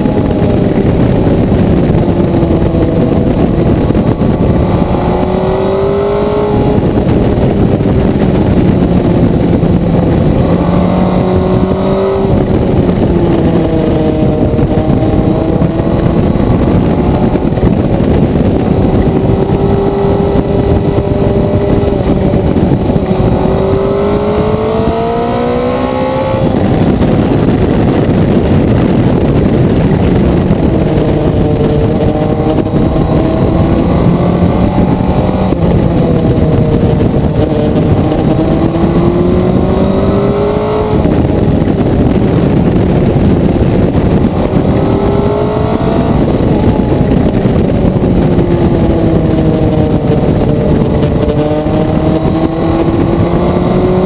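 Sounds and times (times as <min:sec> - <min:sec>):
motorcycle engine revving: 0:00.0 - 0:54.0
wind and road noise: 0:00.0 - 0:54.0.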